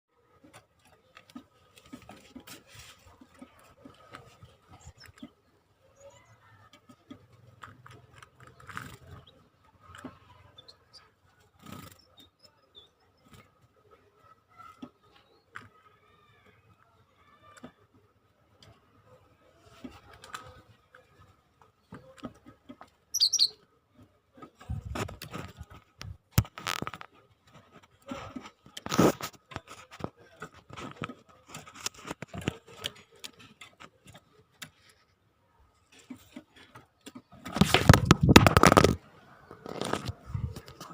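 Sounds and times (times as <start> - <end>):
bird fluttering in cage: 11.5 - 12.2
short high bird chirp: 23.1 - 23.6.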